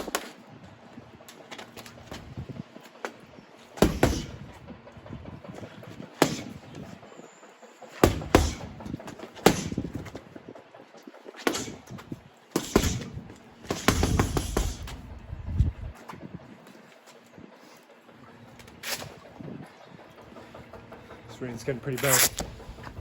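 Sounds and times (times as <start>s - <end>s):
gloves thudding on punch bag: 3.8s - 4.4s, 6.2s - 6.6s, 8.0s - 8.8s, 9.5s - 9.9s, 12.6s - 15.0s.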